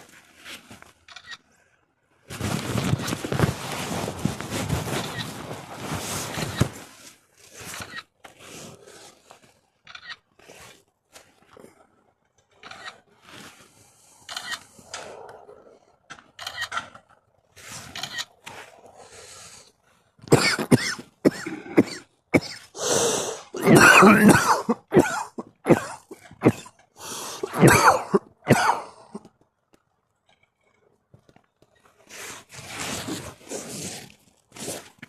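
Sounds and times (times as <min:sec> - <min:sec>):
person coughing: 0:20.3 - 0:26.7, 0:27.4 - 0:29.2.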